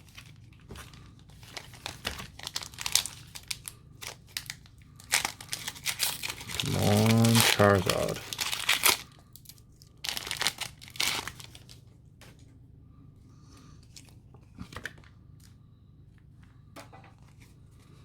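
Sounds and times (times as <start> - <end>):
foil wrapper ripping: 0.0 - 11.8.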